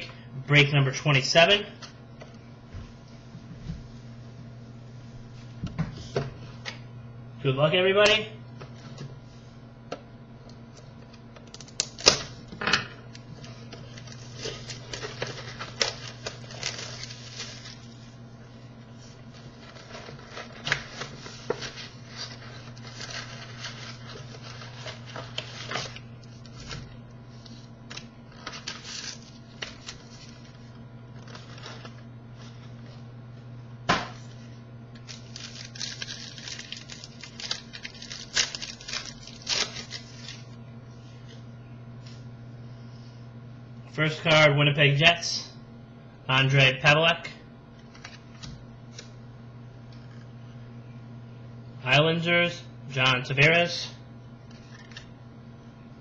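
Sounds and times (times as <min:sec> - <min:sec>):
steady low hum: 0:00.0 - 0:56.0
cardboard and wrappers tearing: 0:13.9 - 0:18.0, 0:19.5 - 0:26.9, 0:27.9 - 0:30.6, 0:31.2 - 0:32.0, 0:35.0 - 0:40.4
cards being shuffled: 0:19.4 - 0:32.9, 0:47.8 - 0:49.1, 0:54.5 - 0:55.1.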